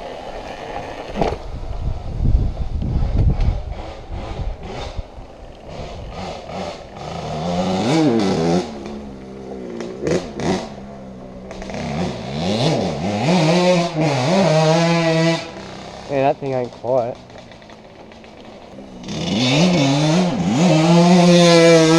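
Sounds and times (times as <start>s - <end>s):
small engine revving: 2.8s - 21.9s.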